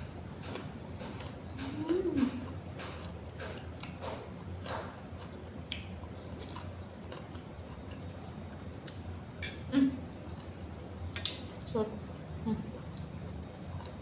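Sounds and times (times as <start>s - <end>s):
person chewing crunchy vegetables: 0.1s - 9.6s, 12.8s - 14.0s.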